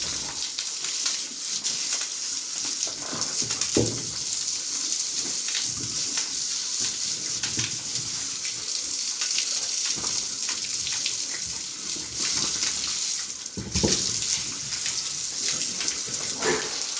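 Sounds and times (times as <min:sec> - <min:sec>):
water rushing: 0:16.1 - 0:16.9.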